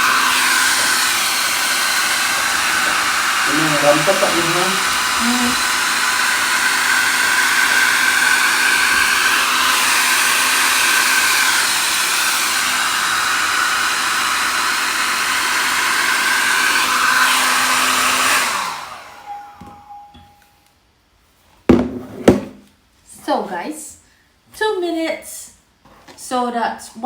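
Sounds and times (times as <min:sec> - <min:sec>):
motor winding down: 0:00.0 - 0:20.0
hair dryer blowing: 0:00.0 - 0:20.3.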